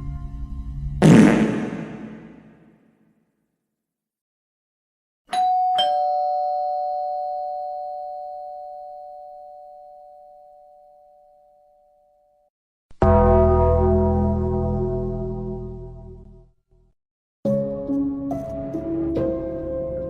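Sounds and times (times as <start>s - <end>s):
two-note doorbell chime: 5.3s - 12.1s.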